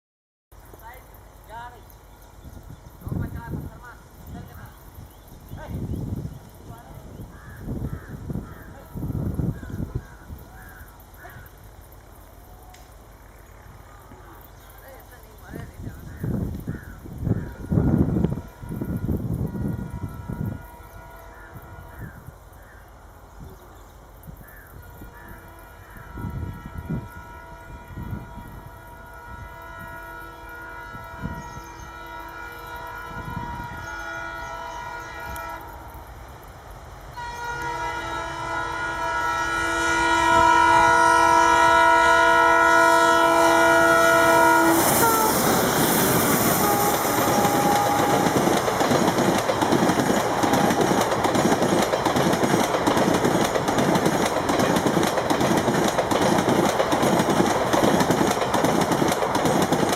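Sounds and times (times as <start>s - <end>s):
diesel locomotive horn: 17.6s - 22.3s, 24.9s - 36.0s, 37.1s - 51.6s
train wheels clattering over rail joints: 45.4s - 59.9s.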